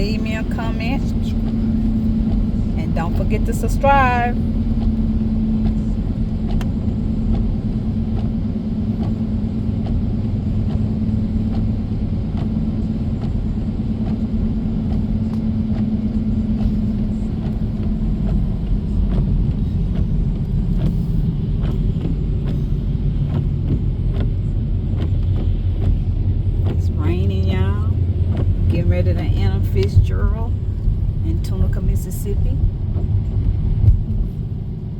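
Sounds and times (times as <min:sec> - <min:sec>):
car engine hum: 0:00.0 - 0:34.9
road rumble inside car: 0:00.0 - 0:34.9.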